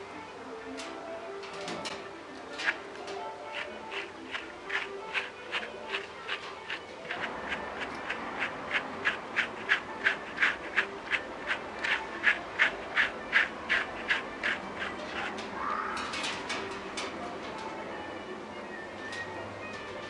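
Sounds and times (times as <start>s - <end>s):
brush raking through dog fur: 3.5s - 15.5s.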